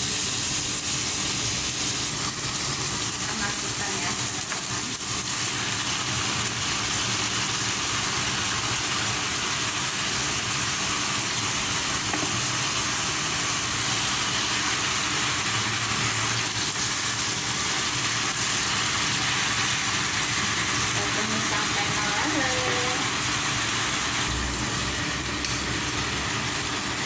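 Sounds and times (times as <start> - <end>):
leaves stir-frying in a pan: 0.0 - 27.0.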